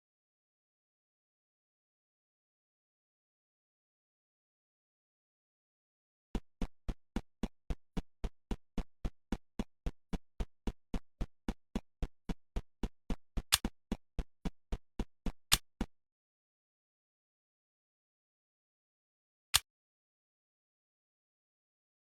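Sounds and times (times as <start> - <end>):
electronic pulse beat low thumps: 6.4 - 15.9.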